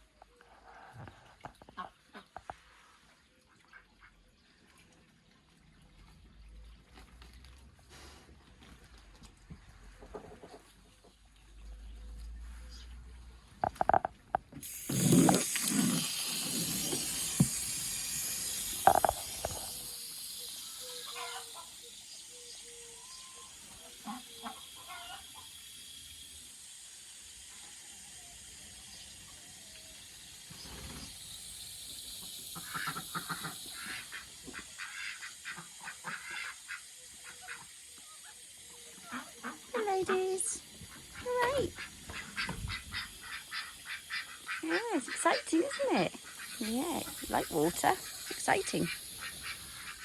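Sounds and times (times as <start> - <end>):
water from hose rushing into pond: 0.0 - 50.0
ducks quacking: 41.1 - 46.6.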